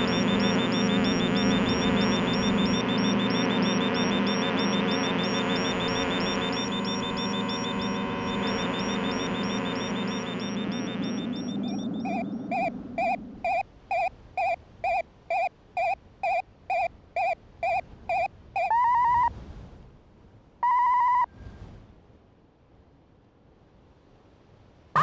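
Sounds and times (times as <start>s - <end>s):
warbling electronic tones: 0.0s - 14.6s
short electronic beeps: 0.0s - 19.2s.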